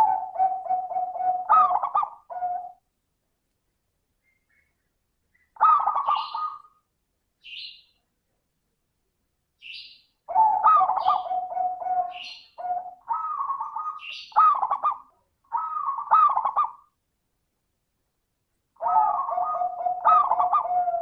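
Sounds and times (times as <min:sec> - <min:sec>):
dove rolling coos: 0:00.0 - 0:02.8, 0:05.6 - 0:06.7, 0:10.3 - 0:16.9, 0:18.8 - 0:21.0.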